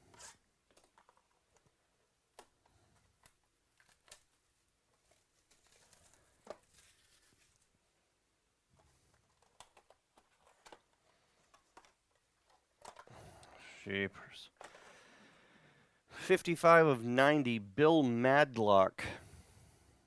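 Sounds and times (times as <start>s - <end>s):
card box crinkling and rustling: 3.7s - 7.7s.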